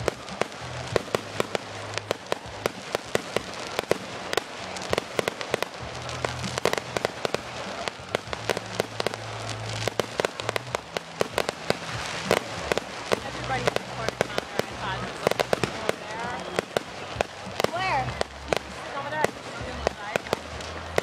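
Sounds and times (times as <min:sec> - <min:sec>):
fireworks bangs and crackles: 0:00.0 - 0:21.0.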